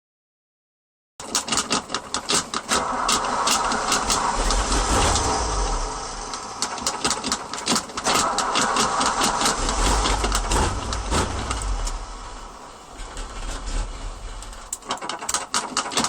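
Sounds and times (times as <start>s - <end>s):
car engine cranking and starting: 1.2s - 16.0s.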